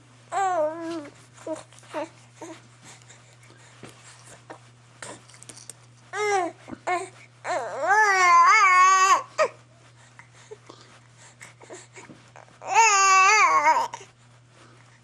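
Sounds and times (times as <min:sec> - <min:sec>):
baby crying high-pitched: 0:07.5 - 0:09.5, 0:12.6 - 0:14.0.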